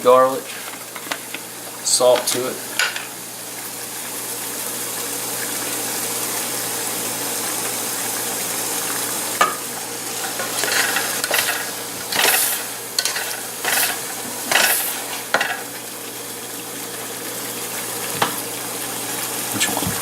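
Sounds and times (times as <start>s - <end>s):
meat sizzling in a frying pan: 0.0s - 20.0s
meat scraped in a pan: 10.2s - 15.6s.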